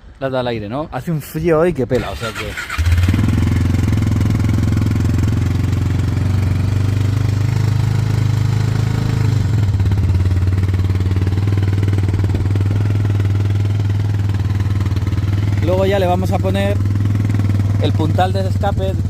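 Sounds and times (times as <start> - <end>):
quad engine idling: 2.0 - 19.0.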